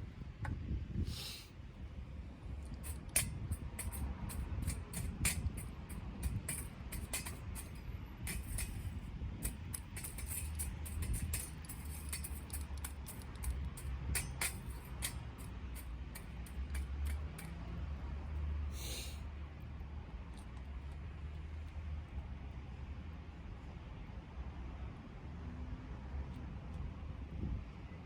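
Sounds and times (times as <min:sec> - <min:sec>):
low steady rumble: 0:00.0 - 0:28.0
firewood crackling and popping: 0:02.5 - 0:17.6.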